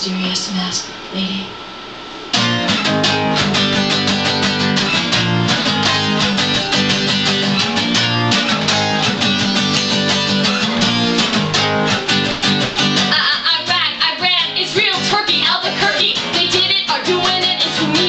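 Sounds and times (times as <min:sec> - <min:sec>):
strummed guitar: 0:02.3 - 0:18.0
bass line: 0:02.4 - 0:14.9.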